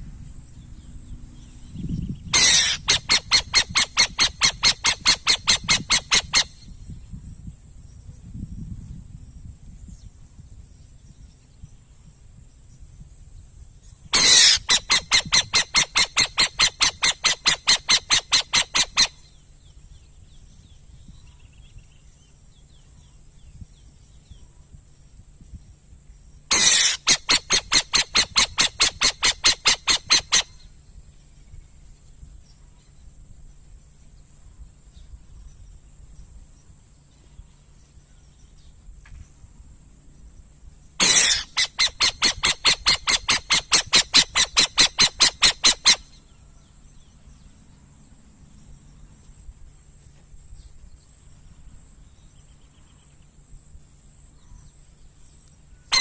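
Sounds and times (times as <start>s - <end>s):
owl calling harsh pulsed notes: 2.3s - 6.7s, 14.2s - 19.3s, 26.5s - 30.8s, 41.0s - 46.3s.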